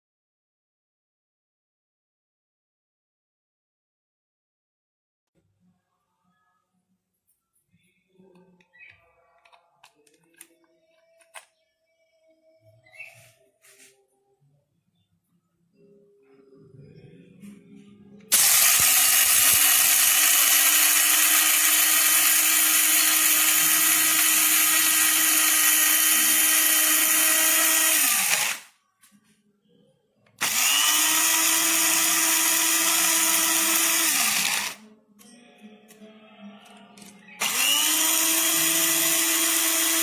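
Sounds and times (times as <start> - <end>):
electric coffee grinder whining: 18.3 - 28.7, 30.4 - 34.8, 37.4 - 40.0.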